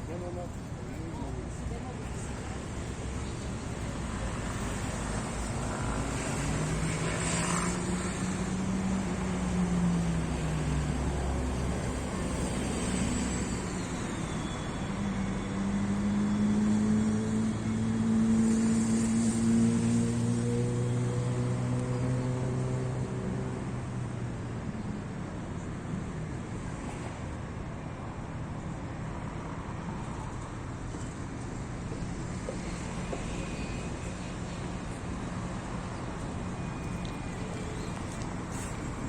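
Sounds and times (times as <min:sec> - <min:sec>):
outdoor rumble: 0:30.0 - 0:39.0.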